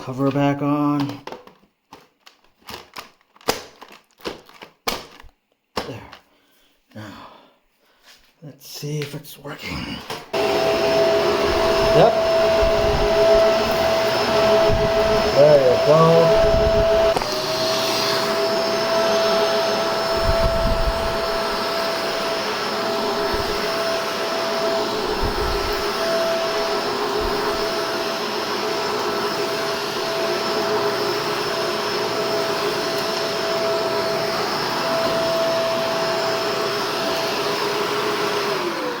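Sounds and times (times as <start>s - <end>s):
vacuum cleaner running: 10.0s - 39.0s.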